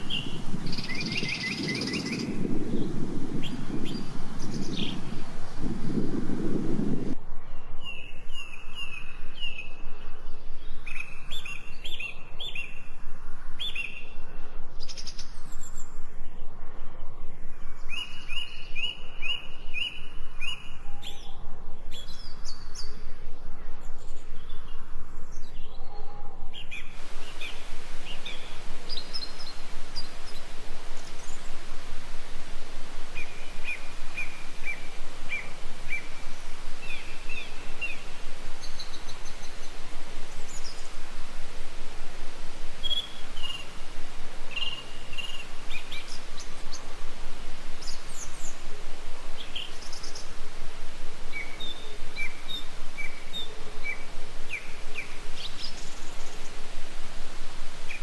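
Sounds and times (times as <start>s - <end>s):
birds chirping: 0.0s - 7.2s, 26.6s - 58.0s
outdoor background hiss: 0.0s - 58.0s.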